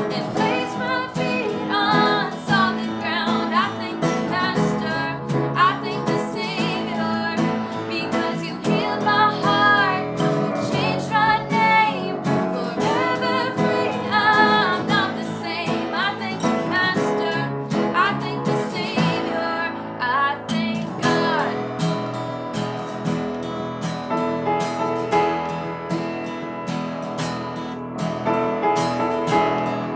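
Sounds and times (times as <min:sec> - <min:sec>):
person singing: 0:00.0 - 0:21.6
strummed acoustic guitar: 0:00.0 - 0:29.9.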